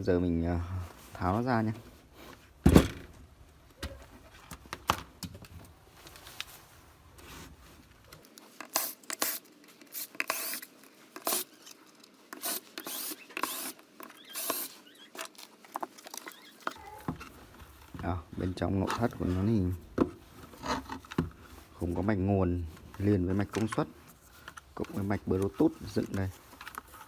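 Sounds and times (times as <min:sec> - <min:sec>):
speaker casing clicks and scrapes: 0:13.3 - 0:21.6, 0:22.8 - 0:27.0.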